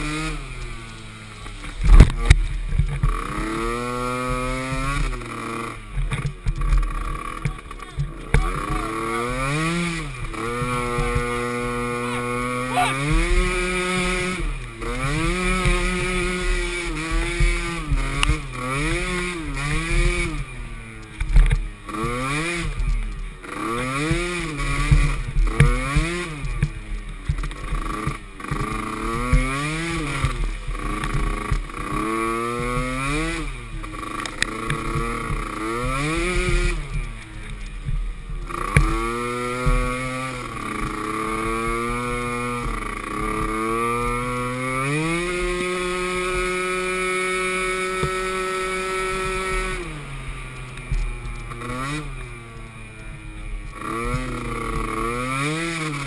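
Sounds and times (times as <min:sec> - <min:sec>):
atv engines revving: 0:00.0 - 0:56.0.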